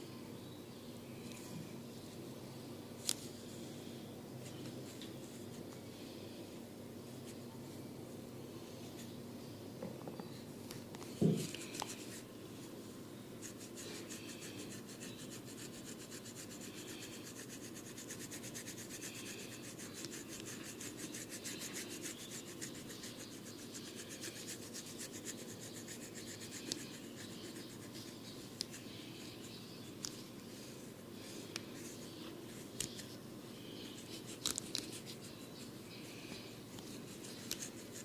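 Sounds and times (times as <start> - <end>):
rubbing and scratching hair: 33.8 - 38.0.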